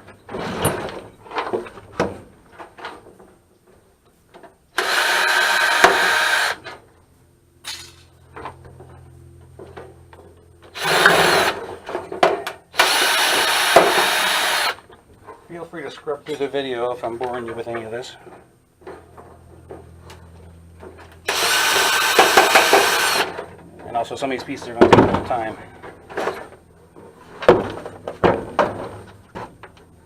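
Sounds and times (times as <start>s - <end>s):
power drill running: 4.8s - 6.7s, 10.7s - 11.6s, 12.7s - 14.8s, 21.2s - 23.4s.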